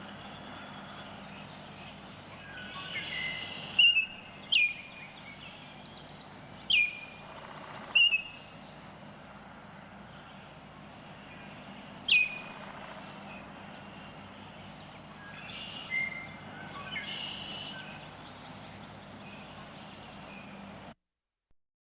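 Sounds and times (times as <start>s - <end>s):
bird calling: 0.0s - 20.6s
low hum and hiss: 0.0s - 21.0s.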